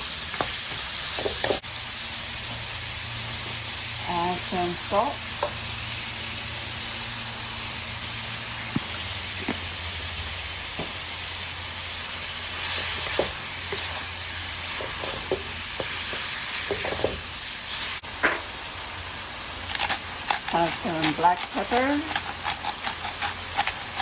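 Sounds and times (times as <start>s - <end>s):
meat sizzling in a frying pan: 0.0s - 24.0s
stirring clicks and scrapes: 14.7s - 17.2s, 19.7s - 24.0s.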